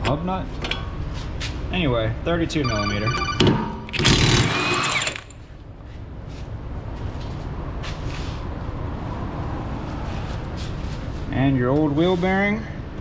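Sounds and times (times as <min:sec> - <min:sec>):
impact wrench whirring: 0:03.9 - 0:05.4.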